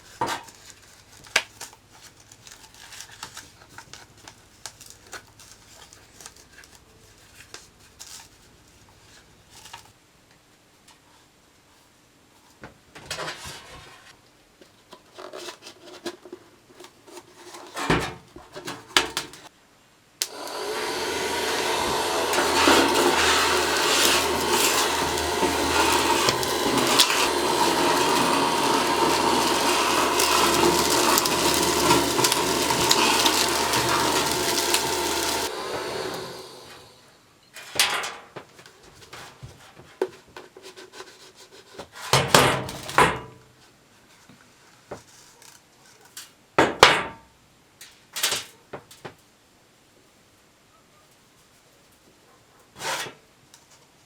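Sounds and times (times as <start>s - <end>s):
vacuum cleaner motor whine: 20.2s - 37.0s.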